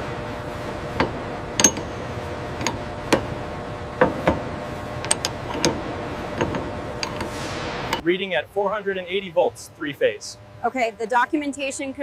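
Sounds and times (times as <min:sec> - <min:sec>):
machinery hum: 0:00.0 - 0:12.0
metal tools clicking: 0:01.6 - 0:01.9, 0:05.0 - 0:05.8, 0:06.4 - 0:07.3.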